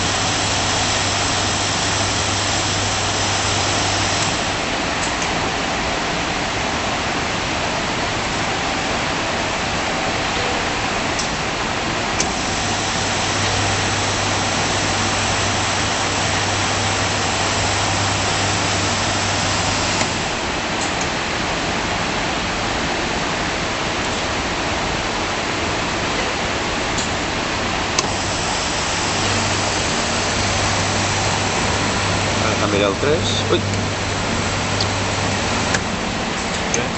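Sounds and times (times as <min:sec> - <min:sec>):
high hiss: 0:00.0 - 0:04.9, 0:12.2 - 0:20.5, 0:28.0 - 0:35.8
bandsaw machine whirring: 0:12.2 - 0:20.4, 0:28.0 - 0:36.9.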